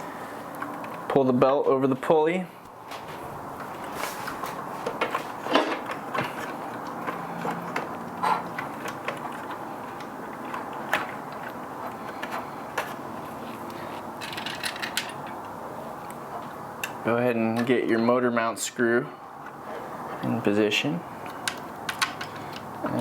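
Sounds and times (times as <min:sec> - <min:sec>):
handling rustle: 0:02.6 - 0:16.5
plastic and metal parts clicking: 0:04.8 - 0:13.0, 0:13.7 - 0:16.2, 0:21.2 - 0:22.8.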